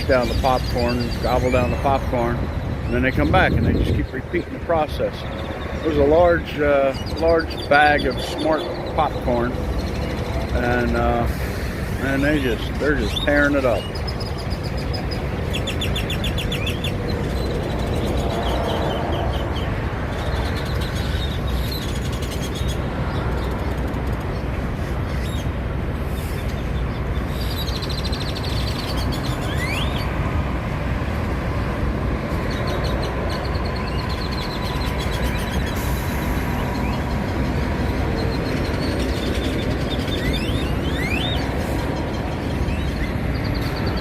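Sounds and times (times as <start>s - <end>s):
engines idling: 0.0s - 21.6s
birds calling: 0.0s - 30.3s, 32.2s - 44.0s
bird whistle: 29.4s - 30.0s.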